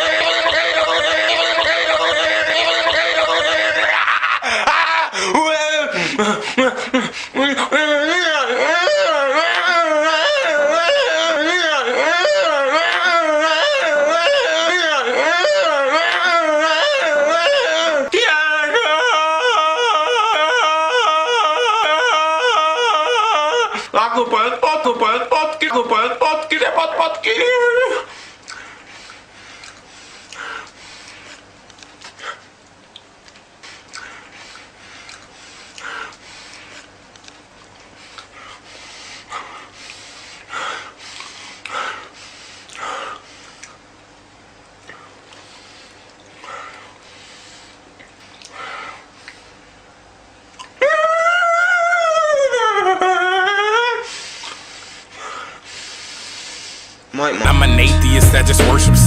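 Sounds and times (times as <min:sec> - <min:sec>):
voice wailing in wavering pitch: 0:00.0 - 0:04.1
person yodeling: 0:00.0 - 0:28.1, 0:50.8 - 0:54.1, 0:57.4 - 0:59.0.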